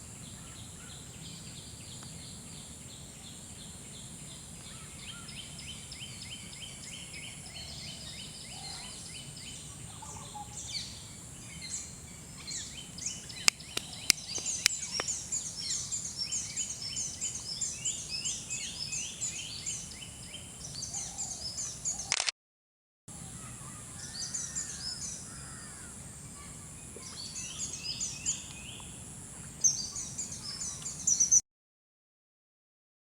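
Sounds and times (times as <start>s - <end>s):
birds chirping: 0.0s - 22.1s, 23.3s - 31.4s
sharp clicks: 22.1s - 22.3s.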